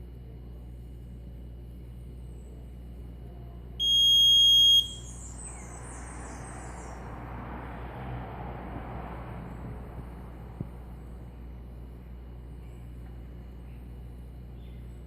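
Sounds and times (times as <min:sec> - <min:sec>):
high-pitched alarm beep: 0:03.8 - 0:05.3.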